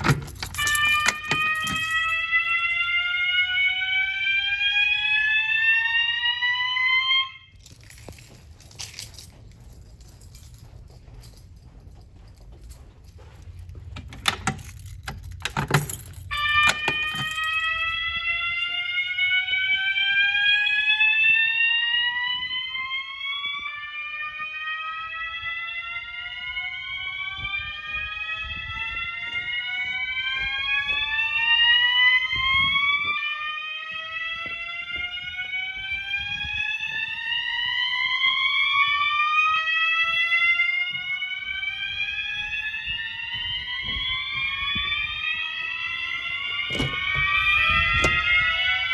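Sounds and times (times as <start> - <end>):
whooping fire alarm horns: 0.0 - 7.8, 14.0 - 48.9.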